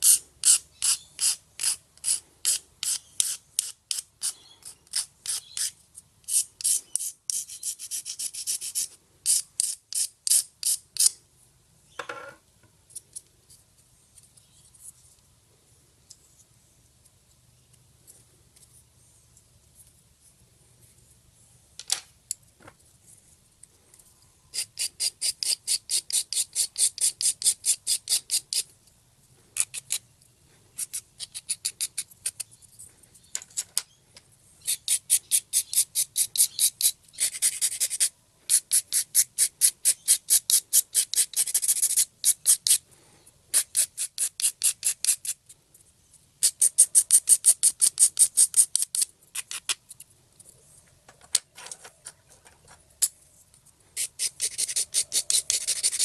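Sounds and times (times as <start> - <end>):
hand file rasping on epoxy: 0.0 - 11.2, 24.6 - 28.7, 34.6 - 42.8, 43.5 - 45.4, 54.0 - 56.0.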